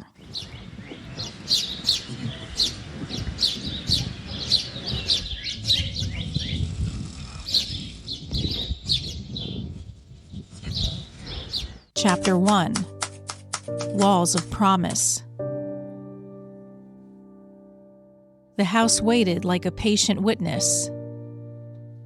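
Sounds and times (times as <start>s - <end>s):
birds chirping: 0.0s - 15.2s.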